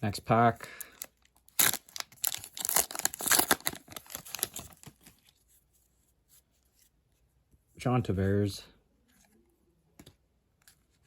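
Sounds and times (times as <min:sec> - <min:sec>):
foil pack tearing and crinkling: 0:01.5 - 0:04.9.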